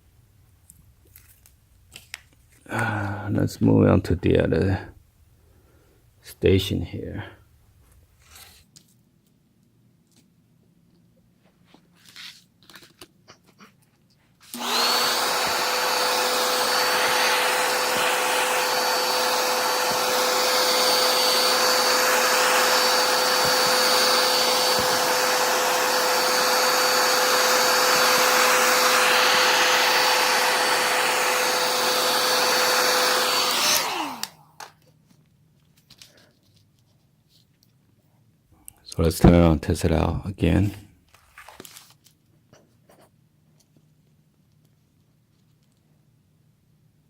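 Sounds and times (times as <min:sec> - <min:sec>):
hair dryer whining: 0:14.4 - 0:34.7
hair dryer motor spinning down: 0:14.5 - 0:34.7.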